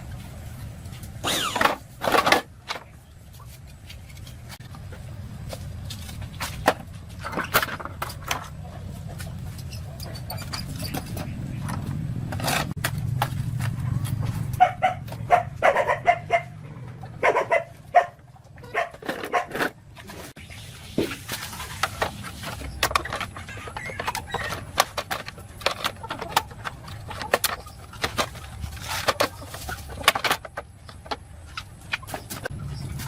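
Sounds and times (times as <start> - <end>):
dog barking: 14.6 - 16.6, 17.2 - 19.6.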